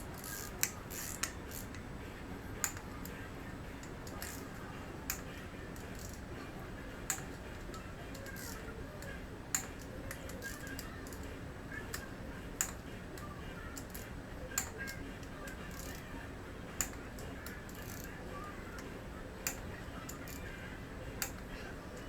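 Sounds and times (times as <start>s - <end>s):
torque wrench clicking: 0.0s - 1.8s, 2.6s - 3.2s, 3.8s - 6.2s, 7.1s - 8.7s, 9.5s - 11.3s, 11.9s - 16.1s, 16.8s - 20.6s, 21.2s - 22.0s.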